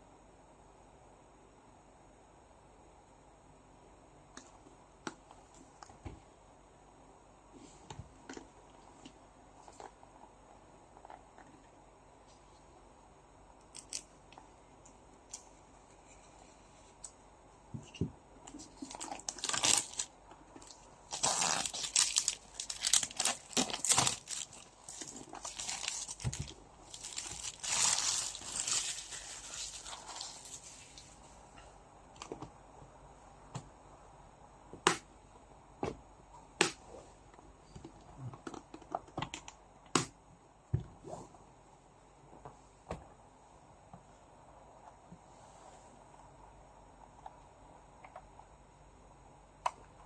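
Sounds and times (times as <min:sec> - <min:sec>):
packaging tearing and crinkling: 0:18.8 - 0:30.8.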